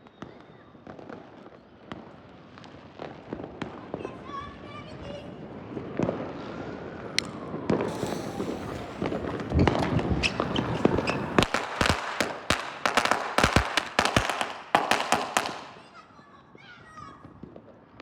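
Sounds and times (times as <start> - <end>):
firecrackers banging: 7.2 - 15.8.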